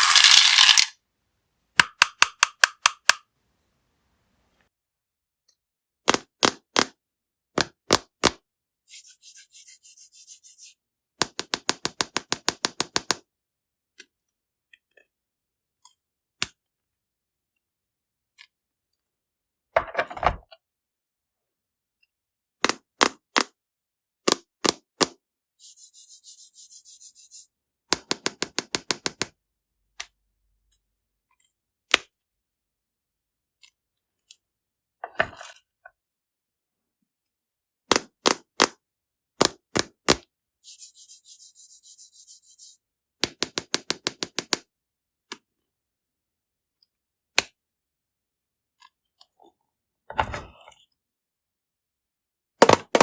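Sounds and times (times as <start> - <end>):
candies clattering into plastic tub: 0.0 - 0.9.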